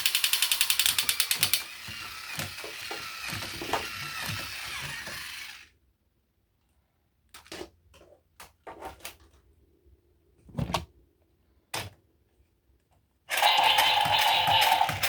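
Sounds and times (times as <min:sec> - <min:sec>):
toy packaging clicks and knocks: 0:00.0 - 0:05.4, 0:13.3 - 0:15.0.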